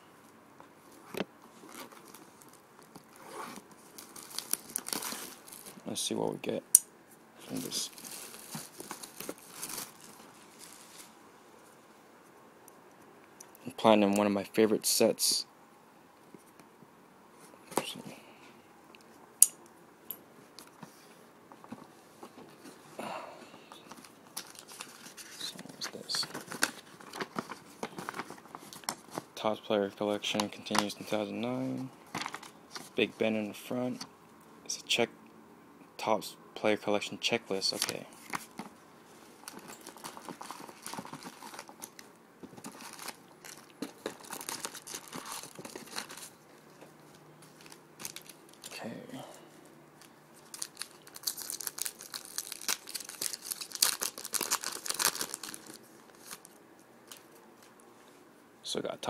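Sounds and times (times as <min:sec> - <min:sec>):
wrapper rustling: 0:00.9 - 0:06.1, 0:07.4 - 0:11.2, 0:23.8 - 0:29.4, 0:30.2 - 0:33.1, 0:37.6 - 0:48.8, 0:50.0 - 0:58.1.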